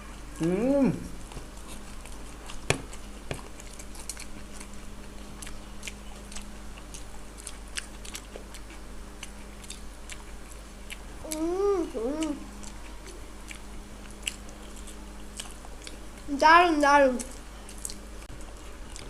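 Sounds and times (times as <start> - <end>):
biting and chewing crispy food: 1.2 - 16.2.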